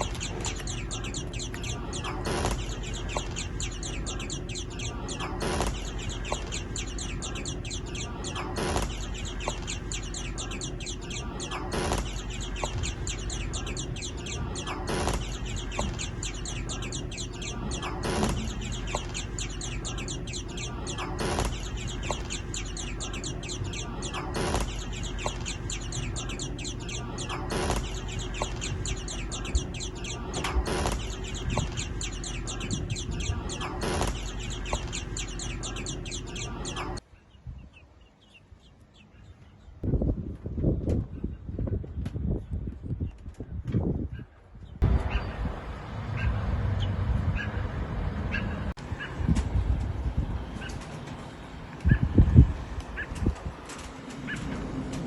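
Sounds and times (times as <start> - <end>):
birds chirping: 0.0 - 37.0, 44.8 - 55.0
wings flapping: 0.0 - 37.0.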